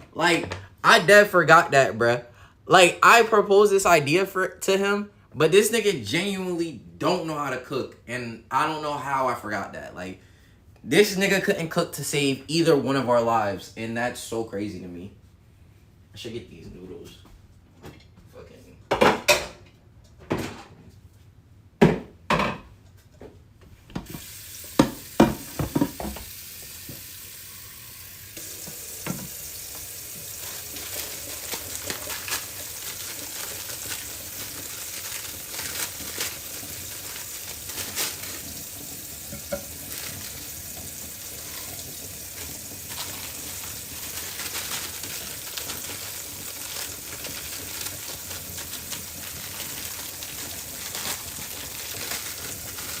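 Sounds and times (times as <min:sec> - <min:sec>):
food sizzling in a hot pan: 0:24.1 - 0:53.0
pans and utensils clanking: 0:24.8 - 0:26.3, 0:39.2 - 0:40.1.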